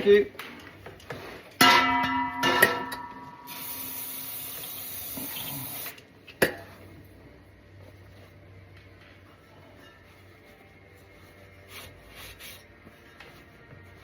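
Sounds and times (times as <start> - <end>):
metal clanks: 1.5 - 3.5.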